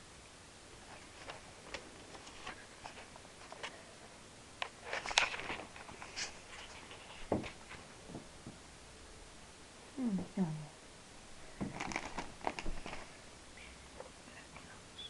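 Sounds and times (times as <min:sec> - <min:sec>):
objects being handled: 0:11.6 - 0:13.2.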